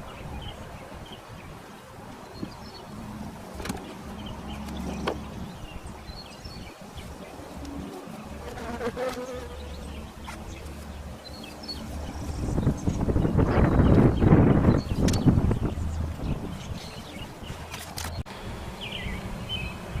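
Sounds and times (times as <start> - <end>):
bees buzzing: 6.7 - 12.6.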